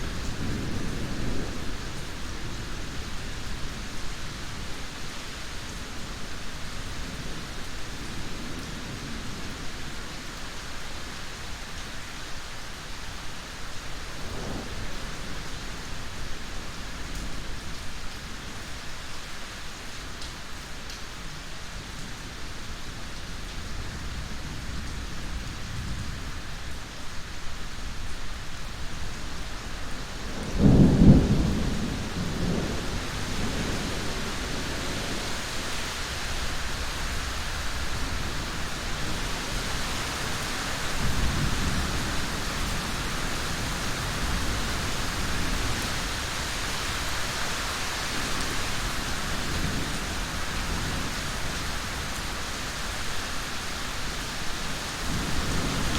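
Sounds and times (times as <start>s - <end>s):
steady rain: 0.0s - 55.9s
thunder rumbling: 30.2s - 47.1s.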